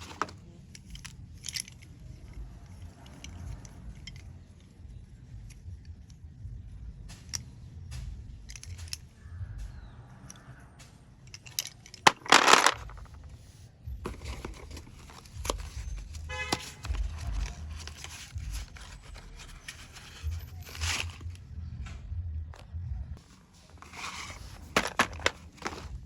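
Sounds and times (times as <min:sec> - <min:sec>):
packaging clicks and rustles: 0:00.0 - 0:01.8, 0:11.4 - 0:13.2, 0:14.1 - 0:21.4, 0:23.3 - 0:26.0.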